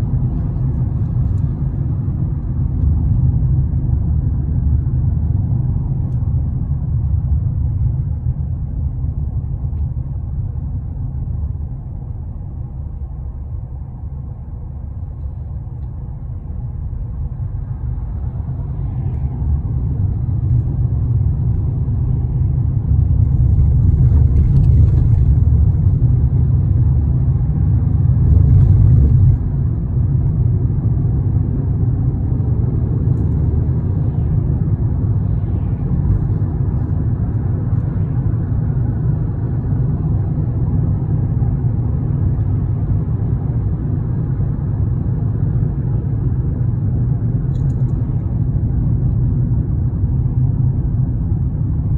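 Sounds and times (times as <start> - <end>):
moving vehicle rumble: 0.0 - 51.9.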